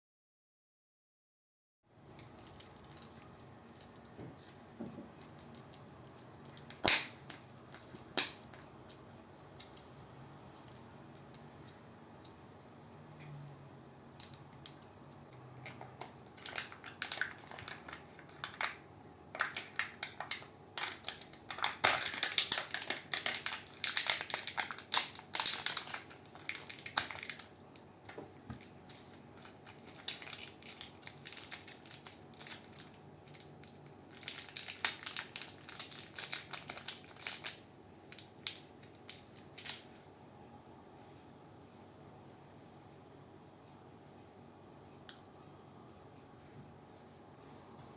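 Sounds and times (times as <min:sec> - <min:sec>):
wrappers crinkling: 0:02.0 - 0:08.9, 0:15.6 - 0:27.7, 0:28.5 - 0:39.9
packaging sharp clicks: 0:02.2 - 0:08.7, 0:19.4 - 0:27.5.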